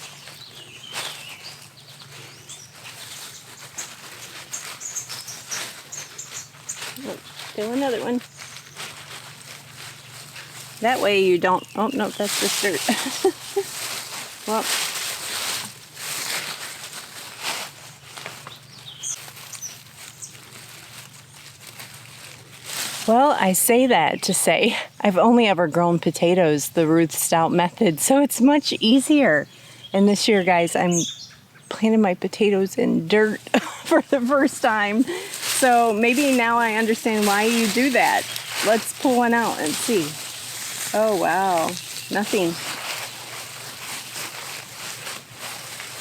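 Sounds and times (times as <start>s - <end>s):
bird chirping: 0.0s - 9.0s, 10.0s - 13.7s, 18.4s - 20.4s, 28.8s - 32.0s, 34.6s - 43.4s
hand rummaging in soil: 0.0s - 24.8s, 32.5s - 46.0s.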